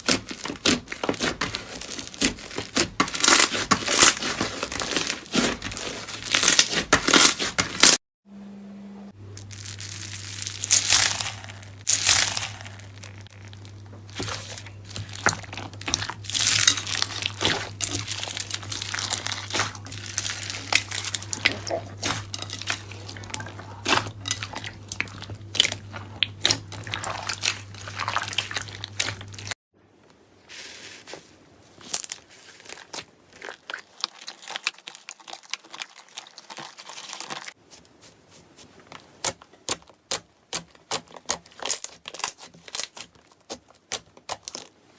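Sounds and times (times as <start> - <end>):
crunchy slime crackling and popping: 0.0 - 8.0, 9.3 - 29.6, 31.8 - 37.6, 39.2 - 44.8
low hum: 8.3 - 29.5.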